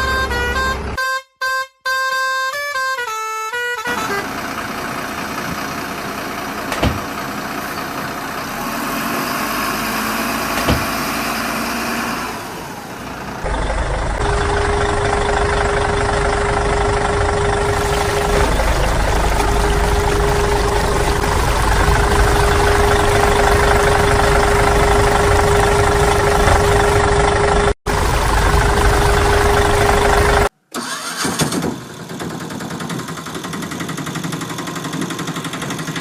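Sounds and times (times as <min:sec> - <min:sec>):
deep humming engine: 0:00.0 - 0:01.0, 0:03.8 - 0:30.5
vehicle engine running: 0:00.0 - 0:01.0, 0:03.9 - 0:30.5, 0:31.8 - 0:36.0.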